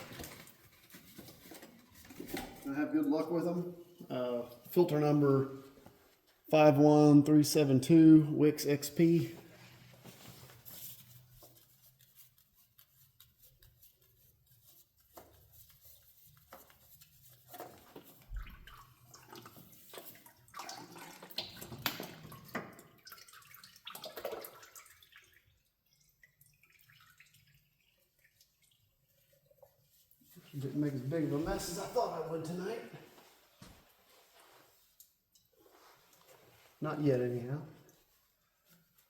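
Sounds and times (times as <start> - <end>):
oil dripping into a pan: 18.4 - 29.8.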